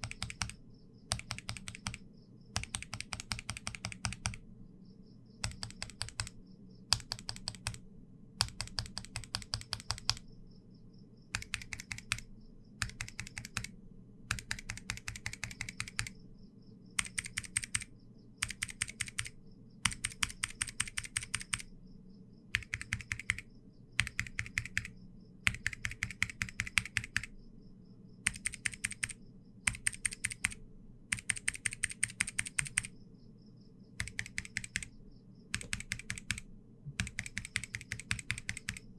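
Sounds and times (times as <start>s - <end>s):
mechanical keyboard typing: 0.0s - 2.0s, 2.6s - 4.4s, 5.4s - 7.8s, 8.4s - 10.2s, 11.3s - 13.7s, 14.3s - 16.2s, 17.0s - 21.7s, 22.5s - 24.9s, 25.5s - 27.3s, 28.3s - 32.9s, 34.0s - 34.9s, 35.5s - 38.9s.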